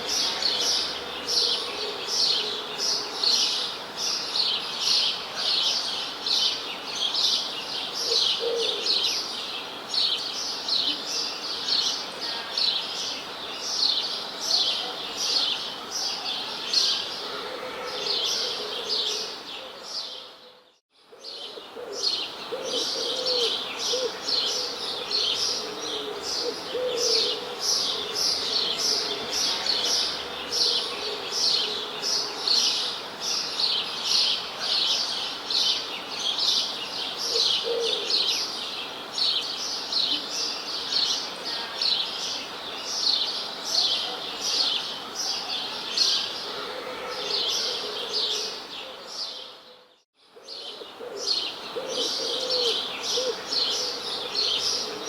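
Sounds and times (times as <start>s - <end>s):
flock of small birds chirping: 21.2s - 49.6s, 50.4s - 55.0s.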